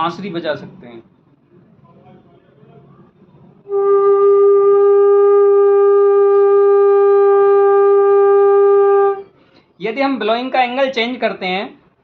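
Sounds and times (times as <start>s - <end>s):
bamboo flute long note: 3.7s - 9.3s.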